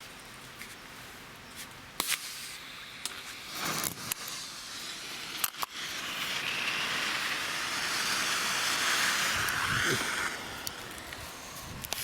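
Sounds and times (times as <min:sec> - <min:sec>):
smoke grenade hissing: 0:02.0 - 0:12.0
sharp clicks and pops: 0:03.0 - 0:04.4, 0:05.2 - 0:06.4, 0:09.4 - 0:12.0.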